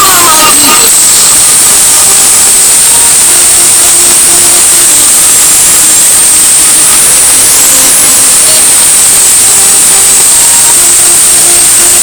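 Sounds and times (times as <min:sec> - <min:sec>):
loud distorted static noise: 0:00.0 - 0:12.0.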